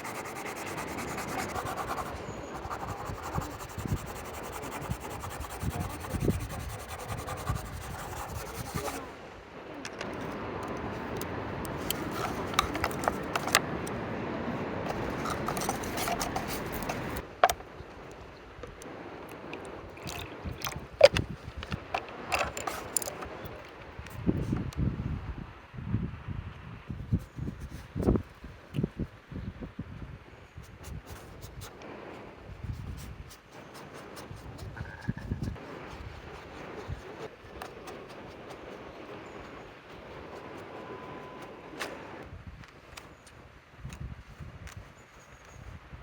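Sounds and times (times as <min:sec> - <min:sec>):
pencil scraping on paper: 0:00.0 - 0:09.1, 0:11.8 - 0:13.6, 0:14.9 - 0:17.2, 0:32.9 - 0:41.5.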